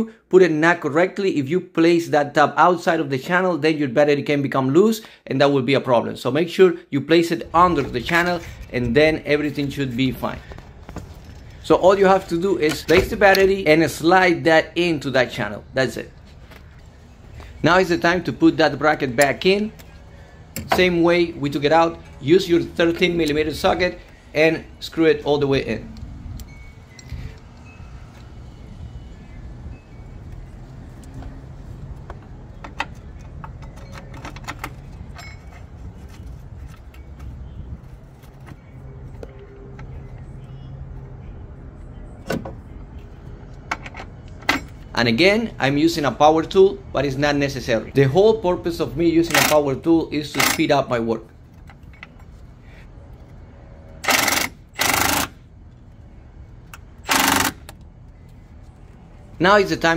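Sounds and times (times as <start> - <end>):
metallic clinks and taps: 32.0 - 35.8
cordless power tool rattling buzz: 54.0 - 55.4, 57.1 - 57.7.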